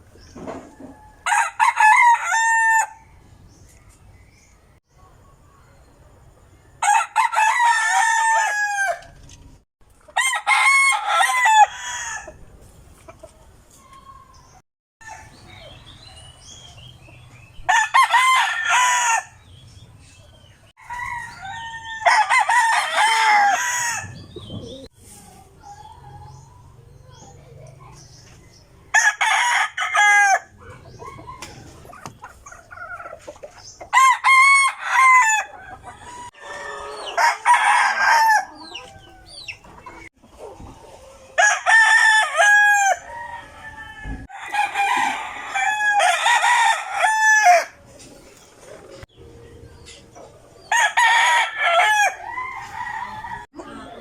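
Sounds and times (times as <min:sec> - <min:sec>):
roosters crowing: 0:00.5 - 0:03.2, 0:06.8 - 0:09.3, 0:10.1 - 0:12.5, 0:15.0 - 0:19.7, 0:20.8 - 0:24.9, 0:28.9 - 0:33.1, 0:33.9 - 0:40.1, 0:41.2 - 0:48.0, 0:50.6 - 0:53.9.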